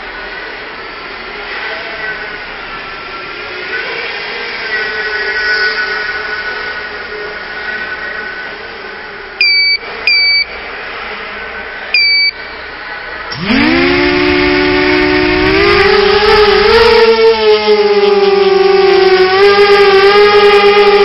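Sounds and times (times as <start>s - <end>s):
two-tone electronic beeps: 9.4s - 10.6s, 11.9s - 12.4s
quadcopter motors whining: 12.0s - 21.0s.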